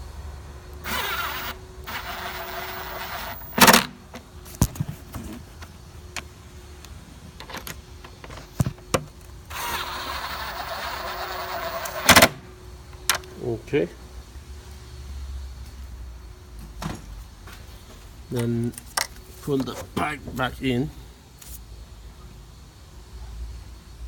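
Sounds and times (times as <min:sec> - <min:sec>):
power tool whirring: 0:00.8 - 0:03.9, 0:09.5 - 0:12.4.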